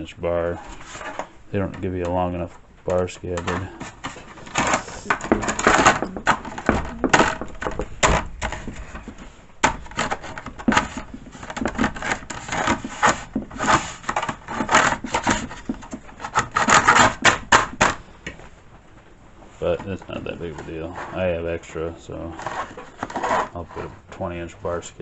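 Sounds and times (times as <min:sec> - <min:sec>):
plastic scabbard scraping and clacking: 0:02.9 - 0:18.0, 0:22.4 - 0:24.2.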